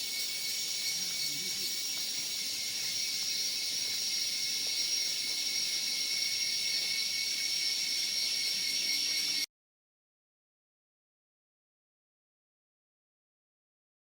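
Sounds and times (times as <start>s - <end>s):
insect chorus drone: 0.0s - 9.5s.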